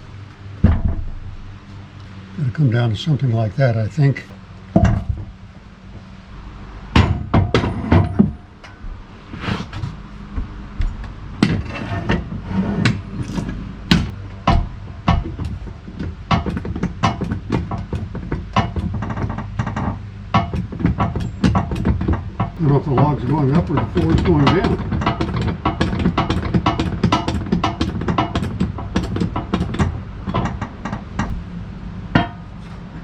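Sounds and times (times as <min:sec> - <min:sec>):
knocks: 0:00.6 - 0:01.6, 0:04.7 - 0:05.4, 0:07.0 - 0:09.0, 0:09.8 - 0:31.5, 0:32.1 - 0:32.5
jack handle clanking: 0:00.6 - 0:01.7, 0:04.6 - 0:05.6, 0:06.9 - 0:09.1, 0:10.3 - 0:31.5, 0:32.1 - 0:32.8.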